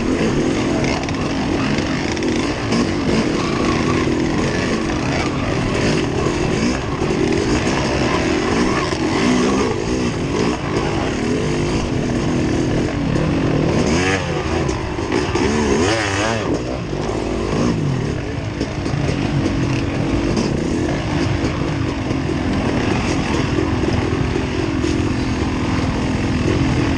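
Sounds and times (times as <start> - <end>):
steady noisy rumble: 0.0 - 26.9
vehicle engine revving: 0.0 - 26.9.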